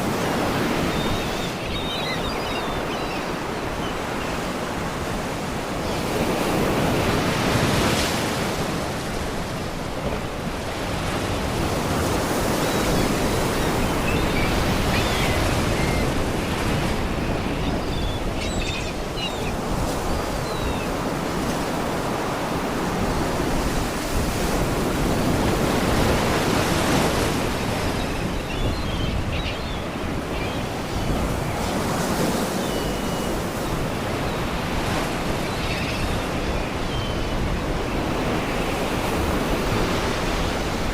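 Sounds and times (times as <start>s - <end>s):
faint seagull cries: 12.4s - 21.1s.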